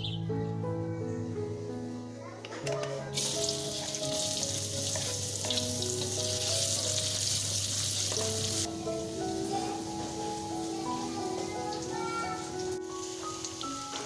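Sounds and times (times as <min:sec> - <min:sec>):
soft background music: 0:00.0 - 0:14.0
food sizzling in a pan: 0:03.1 - 0:14.0.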